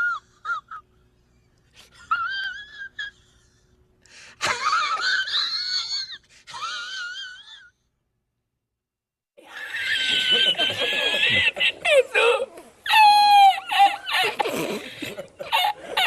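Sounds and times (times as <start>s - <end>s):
high-pitched wheezing laugh: 9.4s - 16.0s.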